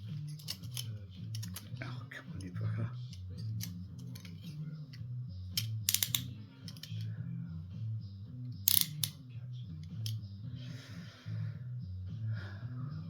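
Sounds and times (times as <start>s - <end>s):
metallic handcuff clicks: 0.2s - 1.8s, 3.1s - 4.6s, 5.5s - 7.0s, 8.7s - 9.2s.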